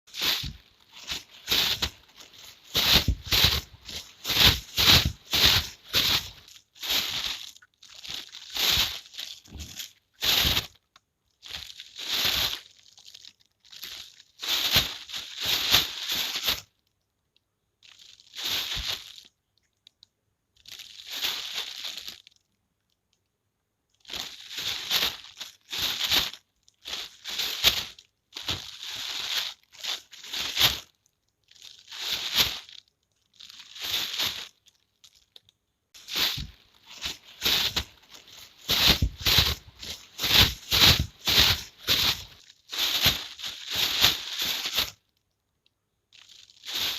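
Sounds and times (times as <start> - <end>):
plastic bag crinkling: 0.1 - 16.9, 17.8 - 19.3, 20.6 - 22.4, 24.0 - 45.3, 46.2 - 46.9.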